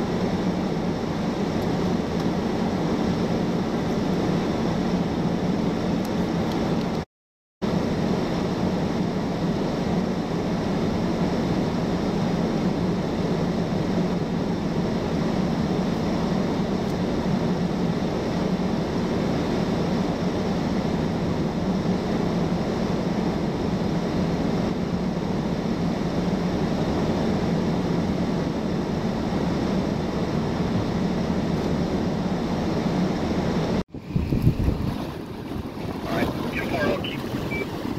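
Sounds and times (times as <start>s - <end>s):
road or wind noise hiss: 0.0s - 7.0s, 7.6s - 37.9s
low vehicle hum: 7.6s - 37.9s.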